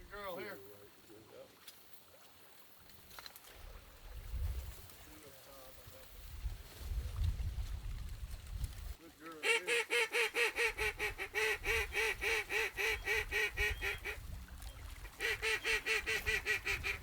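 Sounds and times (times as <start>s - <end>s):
duck quacking: 9.4s - 14.2s, 15.1s - 17.0s.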